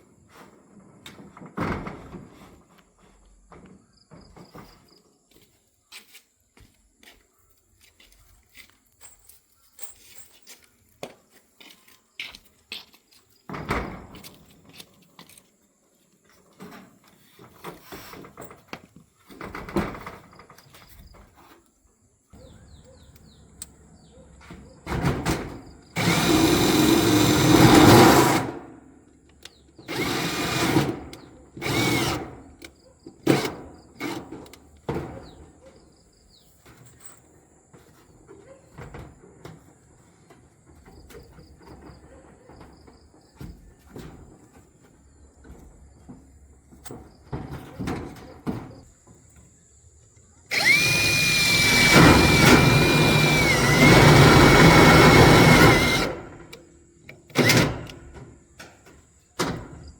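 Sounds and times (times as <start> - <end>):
power drill running: 26.0 - 28.5, 29.9 - 32.4, 50.5 - 56.6.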